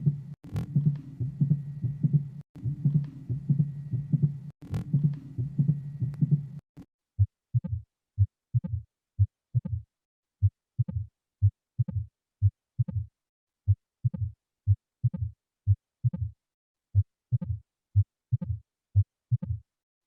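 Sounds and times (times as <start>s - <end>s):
heartbeat: 0.0s - 13.1s, 13.7s - 16.4s, 17.0s - 19.7s.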